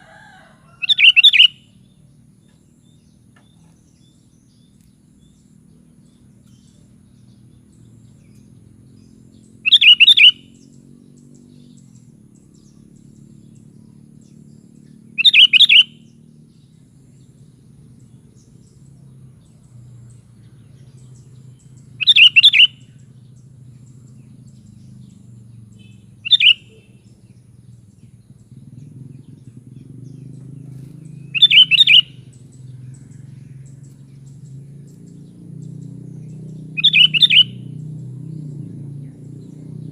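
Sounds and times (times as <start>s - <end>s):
bird bubbling calls: 31.3s - 32.2s, 36.8s - 37.6s.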